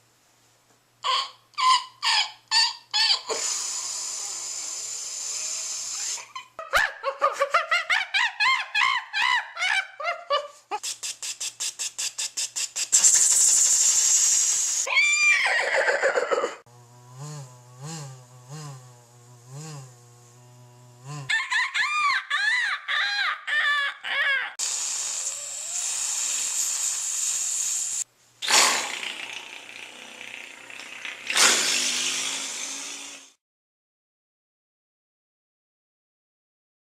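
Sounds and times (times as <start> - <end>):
man making mouth sound effects: 10.7 - 14.8, 17.2 - 18.8, 19.5 - 19.9, 21.0 - 21.3.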